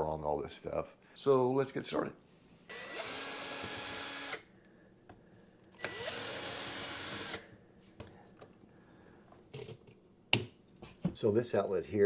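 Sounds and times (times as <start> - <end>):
power drill driving screws: 2.7 - 4.5, 5.8 - 7.5.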